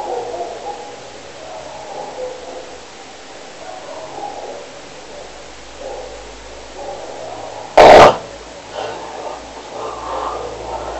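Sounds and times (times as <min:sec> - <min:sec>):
rasping breaths: 0:08.7 - 0:10.9.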